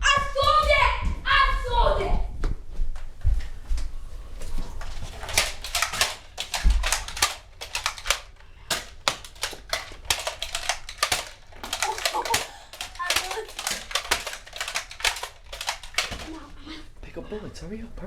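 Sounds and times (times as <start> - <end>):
darts striking clacks: 4.8 - 16.5
foam-dart blasters firing: 4.9 - 16.6.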